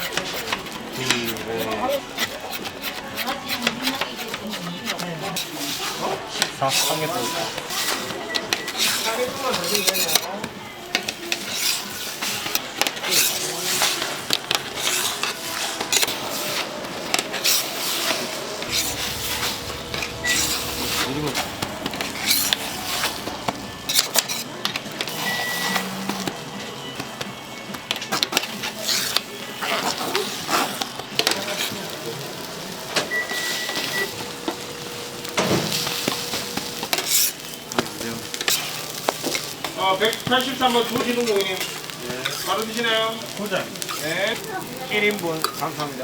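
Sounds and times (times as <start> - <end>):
utensils scraping a pan: 0.0 - 10.3, 10.9 - 26.4, 28.3 - 31.9, 35.8 - 46.0
kitchen noise hiss: 0.0 - 27.1, 28.4 - 46.0
food sizzling in a pan: 4.1 - 26.4, 28.5 - 46.0
low hum: 18.3 - 24.3.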